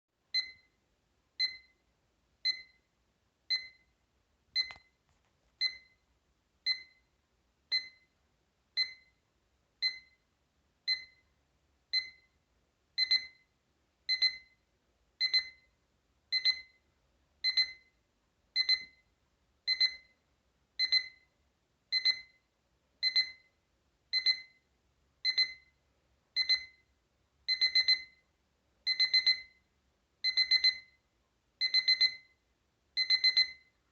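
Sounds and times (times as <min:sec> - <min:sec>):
alarm clock beeping: 0:00.4 - 0:00.8, 0:01.4 - 0:01.8, 0:02.4 - 0:02.9, 0:03.5 - 0:03.9, 0:04.6 - 0:05.0, 0:05.6 - 0:06.0, 0:06.7 - 0:07.1, 0:07.7 - 0:08.2, 0:08.8 - 0:09.2, 0:09.8 - 0:10.2, 0:10.9 - 0:12.4, 0:13.0 - 0:18.0, 0:18.6 - 0:20.2, 0:20.8 - 0:28.3, 0:28.9 - 0:32.4, 0:33.0 - 0:33.9.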